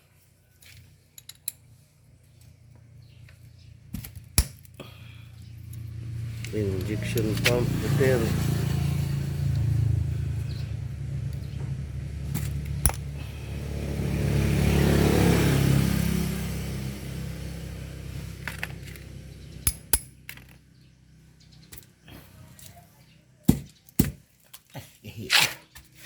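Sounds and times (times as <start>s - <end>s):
vehicle engine humming: 2.1s - 23.6s
sharp metallic clicks: 19.6s - 20.4s.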